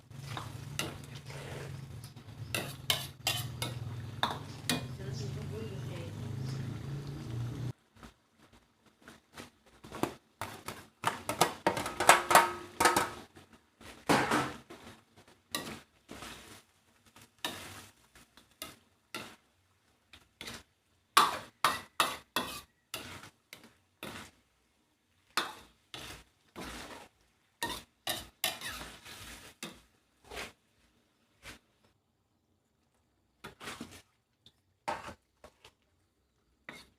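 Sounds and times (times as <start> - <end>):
utensils scraping against a pot: 0.0 - 5.4, 13.9 - 19.5, 20.1 - 24.4, 25.3 - 30.6, 34.9 - 35.8, 36.6 - 36.9.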